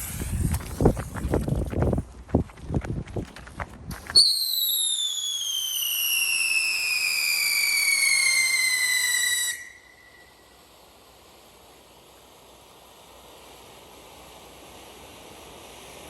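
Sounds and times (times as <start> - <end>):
firework whistle gliding down: 4.0 - 10.7.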